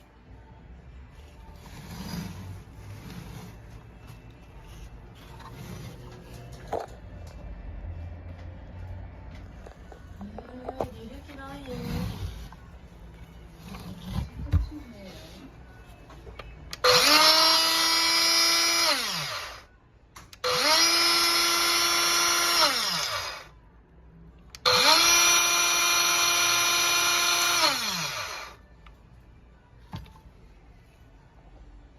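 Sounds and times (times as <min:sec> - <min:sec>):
cordless cutter motor whine: 0:16.8 - 0:19.7, 0:20.4 - 0:23.5, 0:24.6 - 0:28.6.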